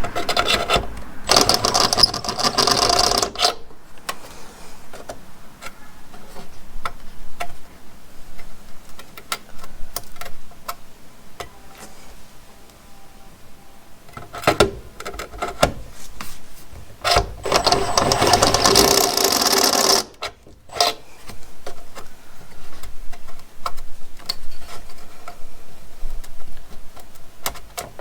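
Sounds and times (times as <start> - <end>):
handling clicks and knocks: 0.0 - 4.2
power drill spinning: 1.2 - 3.6, 17.1 - 21.0.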